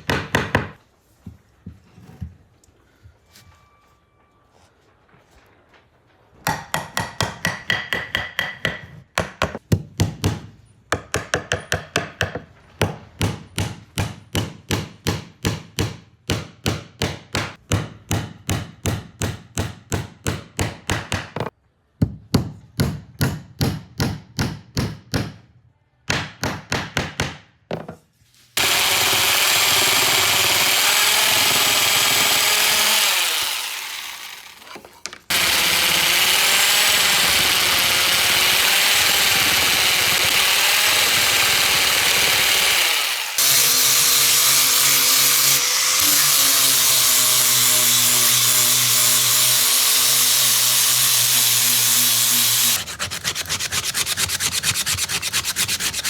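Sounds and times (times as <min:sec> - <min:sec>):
power tool running: 0:28.6 - 0:54.2
hand tool working wood: 0:28.6 - 0:56.0.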